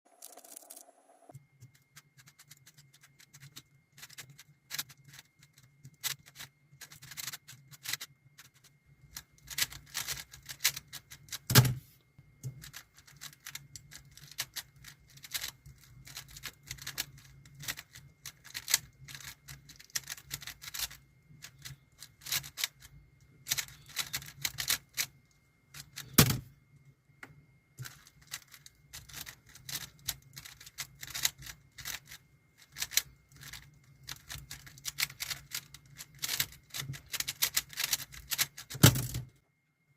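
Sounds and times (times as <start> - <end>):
speed cube plastic clicks: 12.6 - 22.8, 23.5 - 25.1, 27.8 - 39.3.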